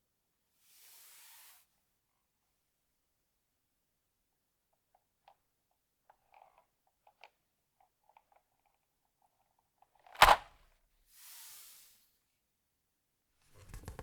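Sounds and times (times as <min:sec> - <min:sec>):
keyboard parts clicking: 0:13.6 - 0:14.0.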